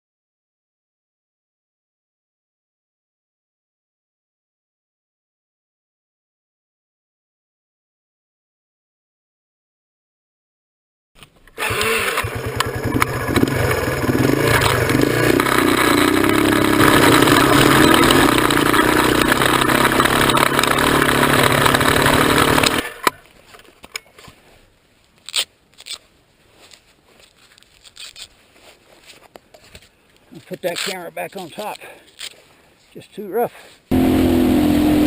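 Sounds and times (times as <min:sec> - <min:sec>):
motorcycle engine running: 0:11.6 - 0:23.2, 0:33.9 - 0:35.0.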